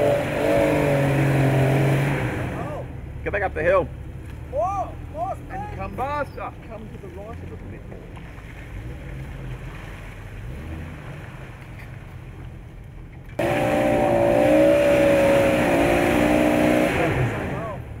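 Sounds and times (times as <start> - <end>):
engine at high revs: 0.0 - 2.9, 13.4 - 18.0
distant engine rumble: 0.0 - 18.0.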